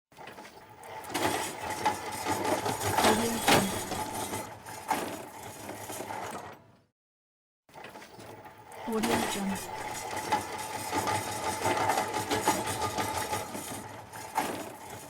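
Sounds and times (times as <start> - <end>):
trolley wheels rattling: 0.8 - 6.5, 8.9 - 15.0.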